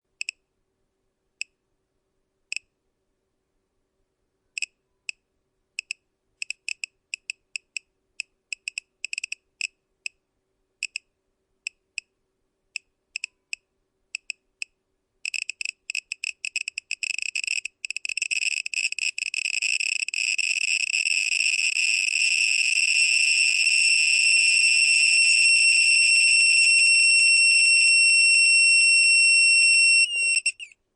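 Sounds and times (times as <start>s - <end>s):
geiger counter clicking: 5.8s - 10.2s, 10.8s - 11.1s, 12.8s - 13.6s, 14.2s - 24.1s
geiger counter whine: 17.2s - 30.6s.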